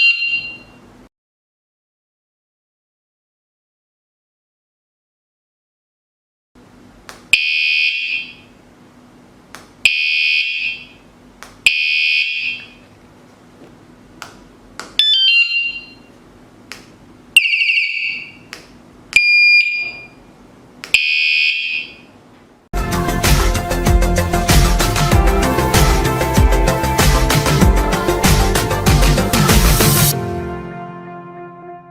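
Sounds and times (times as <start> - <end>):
alarm click: 0.0 - 0.8, 7.3 - 8.4, 9.9 - 11.0, 11.7 - 12.8, 15.0 - 16.1, 17.4 - 18.4, 19.2 - 20.2, 20.9 - 22.0
electronic bike alarm bursts: 0.0 - 0.8, 7.4 - 8.4, 9.9 - 11.0, 11.7 - 12.8, 15.0 - 16.1, 17.4 - 18.4, 19.2 - 20.2, 21.0 - 22.0.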